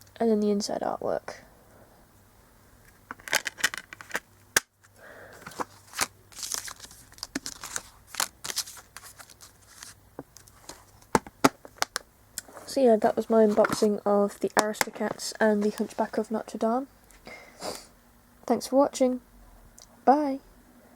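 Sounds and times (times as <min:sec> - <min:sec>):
packaging rustling: 0:05.3 - 0:16.2
plastic case clicks and taps: 0:11.1 - 0:12.0.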